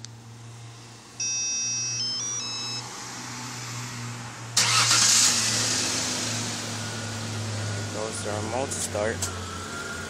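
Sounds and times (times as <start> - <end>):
electronic beeps stepping in pitch: 1.2 - 2.8
truck engine cranking and starting: 4.6 - 8.0.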